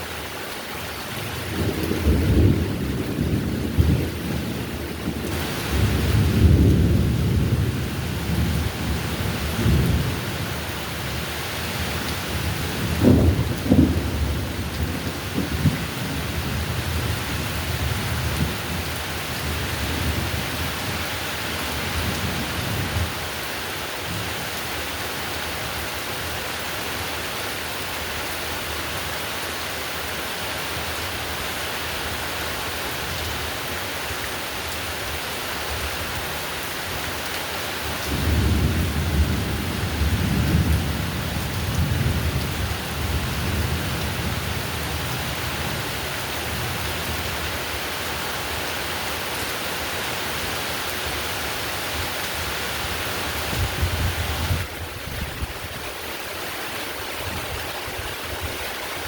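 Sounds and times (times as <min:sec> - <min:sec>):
heavy rain: 0:00.0 - 0:59.0
low rumbling thunder: 0:01.5 - 0:11.2, 0:11.8 - 0:21.1, 0:38.0 - 0:45.9.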